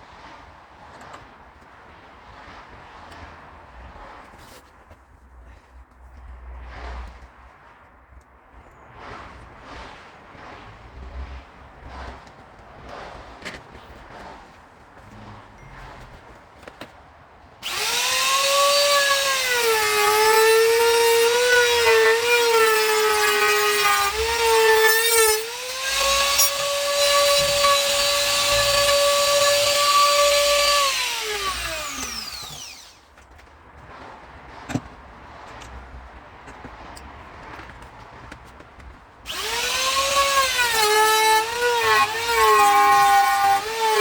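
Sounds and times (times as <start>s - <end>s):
router whining while cutting wood: 17.6s - 33.0s, 39.3s - 44.0s.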